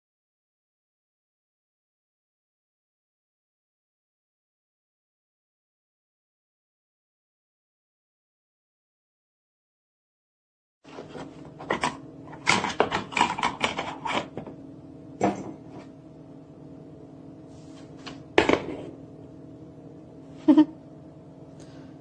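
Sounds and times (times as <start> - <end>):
steady low hum: 10.9 - 22.0
coffee maker parts clattering: 11.0 - 14.5, 15.2 - 15.8.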